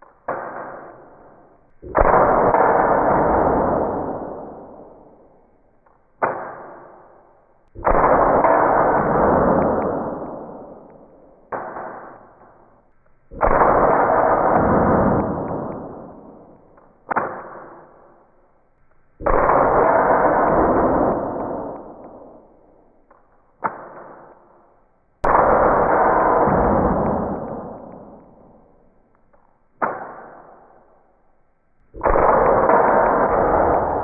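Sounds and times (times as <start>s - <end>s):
loud bang: 0.0s - 5.4s, 7.7s - 18.2s, 25.2s - 29.1s
air pistol sharp crack: 0.0s - 18.5s, 19.2s - 31.0s, 31.9s - 34.0s.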